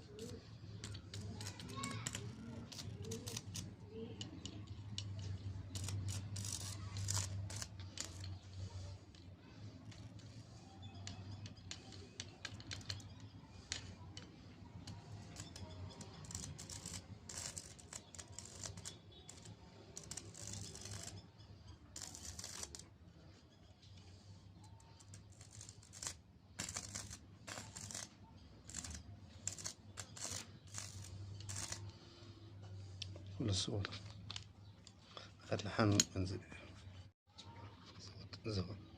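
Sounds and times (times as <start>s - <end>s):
clicks snips and scrapes on wiring: 0.0s - 22.9s, 23.9s - 32.0s.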